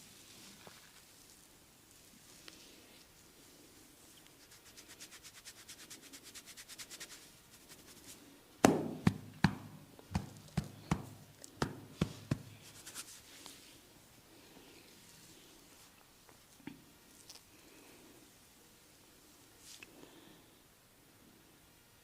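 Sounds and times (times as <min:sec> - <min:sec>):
light tapping massage strokes: 0:04.1 - 0:13.8
sharp hand slaps: 0:08.6 - 0:12.5.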